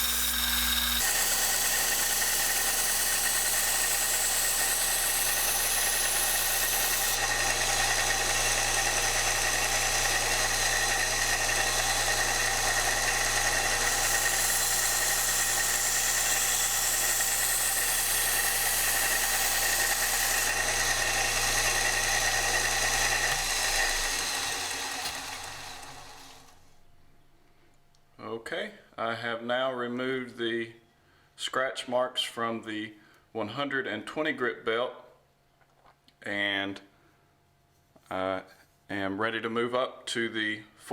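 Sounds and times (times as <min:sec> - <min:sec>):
belt sander motor hum: 0:00.0 - 0:26.6
belt winding down: 0:00.0 - 0:26.6.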